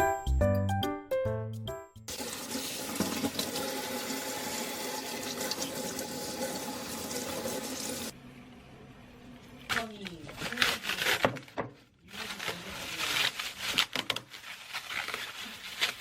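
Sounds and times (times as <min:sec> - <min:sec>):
tap water running into sink: 0:02.1 - 0:08.1.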